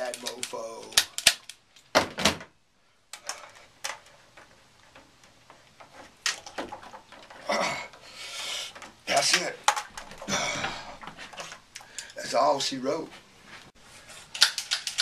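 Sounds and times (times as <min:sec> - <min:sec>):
rustling: 0:02.8 - 0:15.0
plumbing tools clicking and knocking: 0:03.1 - 0:12.2.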